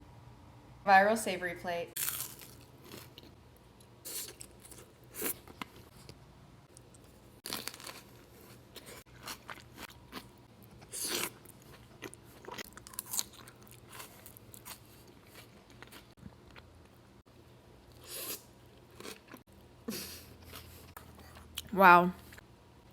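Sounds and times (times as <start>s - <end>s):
crunching bites: 2.0s - 3.3s, 6.8s - 16.0s.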